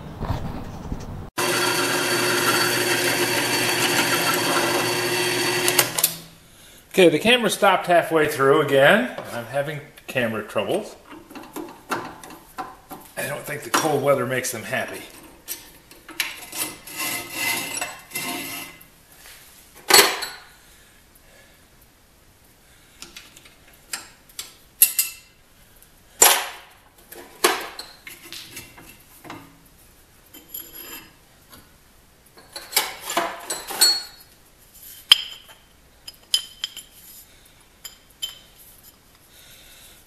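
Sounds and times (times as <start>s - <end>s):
steel parts clinking and scraping: 15.1s - 18.8s, 30.3s - 31.2s, 32.4s - 39.1s.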